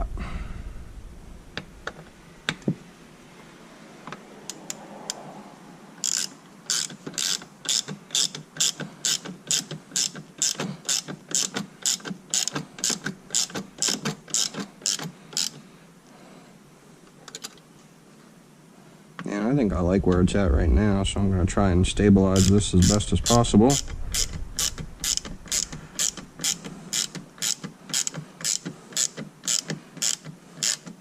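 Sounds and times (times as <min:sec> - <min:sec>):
ratchet wrench clicking: 0:06.0 - 0:15.6, 0:22.4 - 0:31.0.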